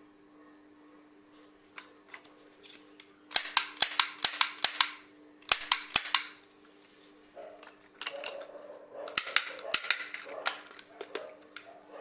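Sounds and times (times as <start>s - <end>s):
toy cap gun cracks: 3.3s - 6.4s, 9.1s - 10.9s.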